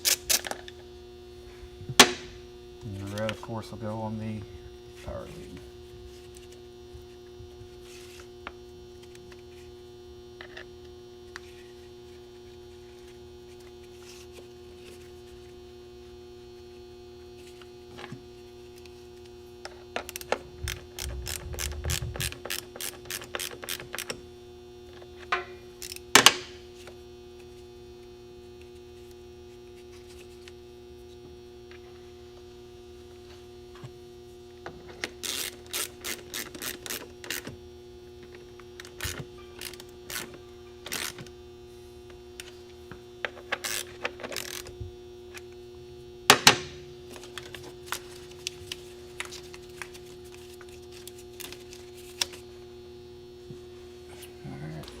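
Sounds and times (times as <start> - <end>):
electrical hum: 0.0 - 55.0.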